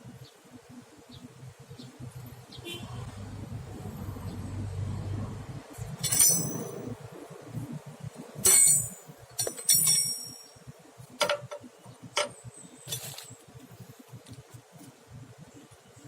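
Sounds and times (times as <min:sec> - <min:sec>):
low rumble: 0:03.0 - 0:06.0
metal tools clinking on metal: 0:06.0 - 0:07.0, 0:08.4 - 0:10.6, 0:12.2 - 0:13.3.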